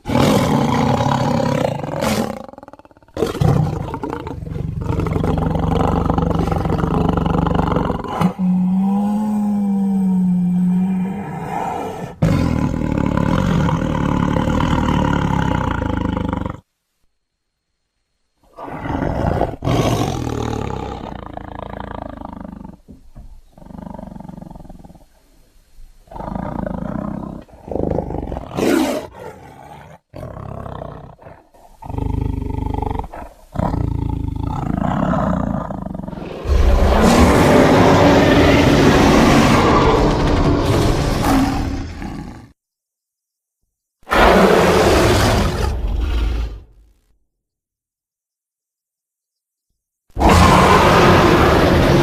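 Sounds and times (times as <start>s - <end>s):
creature roars and growls: 3.2s - 16.6s, 32.8s - 42.6s, 44.1s - 46.8s, 50.2s - 52.0s.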